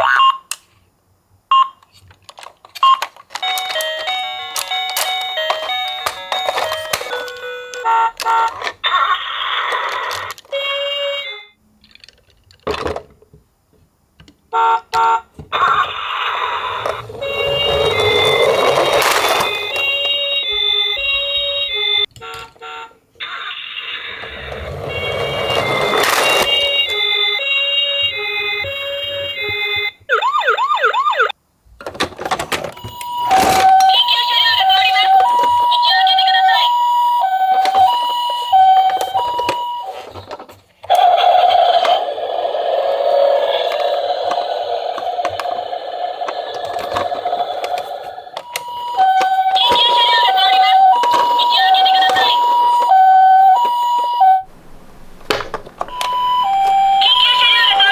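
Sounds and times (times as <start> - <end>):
toy two-tone siren: 2.9 - 11.6, 14.6 - 31.4, 32.8 - 54.5, 55.8 - 57.9.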